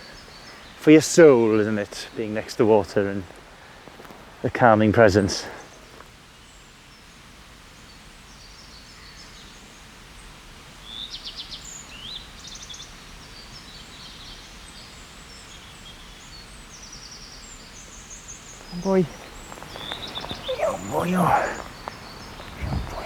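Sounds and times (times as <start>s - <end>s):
small songbirds trilling: 0.0s - 2.4s, 10.8s - 23.0s
steady outdoor hiss: 0.0s - 23.0s.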